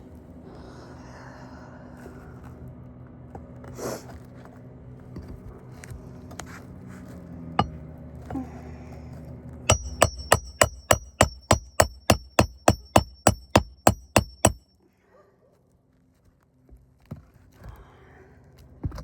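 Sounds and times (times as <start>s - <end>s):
steady low hum: 7.6s - 14.6s
hammer striking nail: 9.7s - 14.6s.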